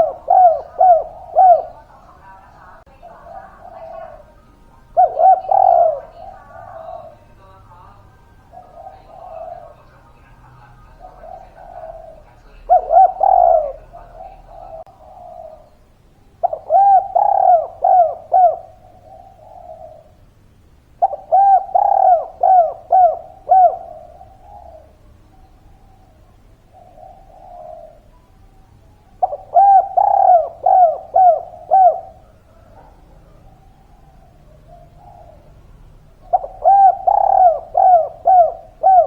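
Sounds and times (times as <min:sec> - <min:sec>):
dove cooing: 0:00.0 - 0:39.0.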